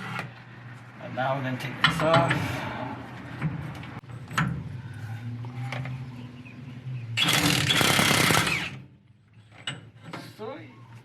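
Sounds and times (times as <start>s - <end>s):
power tool spinning off nut: 7.2s - 8.8s.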